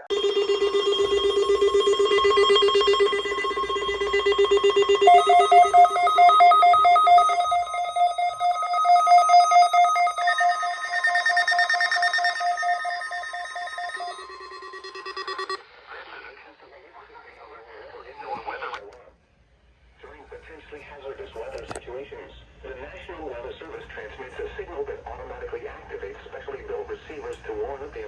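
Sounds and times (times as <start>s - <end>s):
weather radio alarms beeping: 0.0s - 15.6s.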